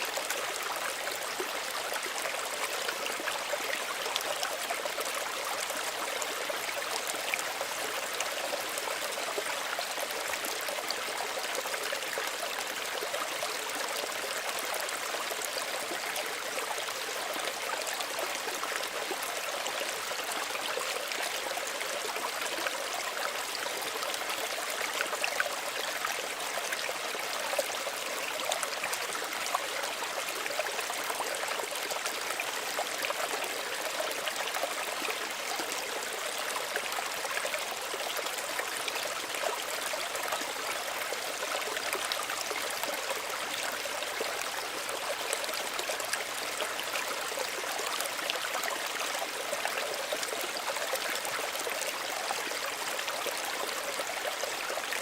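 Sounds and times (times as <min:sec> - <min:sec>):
stream babbling over stones: 0:00.0 - 0:55.0.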